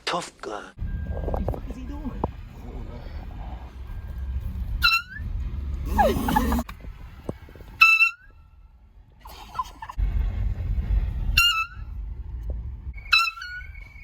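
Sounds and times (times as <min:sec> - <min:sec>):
low vehicle rumble: 0:00.8 - 0:14.0
handheld air horn blasts: 0:04.8 - 0:05.2, 0:07.8 - 0:08.3, 0:13.0 - 0:13.8.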